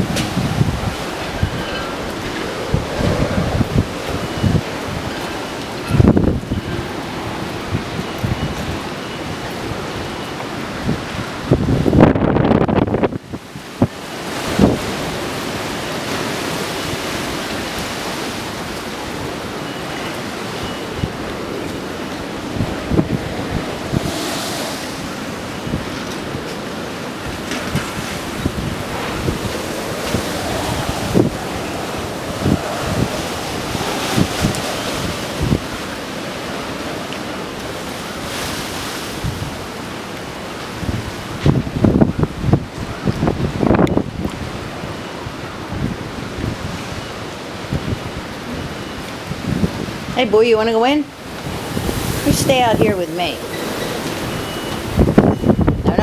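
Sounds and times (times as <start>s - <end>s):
wind thump on microphone: 0.0s - 5.1s, 27.4s - 35.8s, 40.8s - 44.5s, 51.4s - 56.0s
storm surf rushing: 0.0s - 56.0s
wind gusting across microphone: 0.0s - 56.0s.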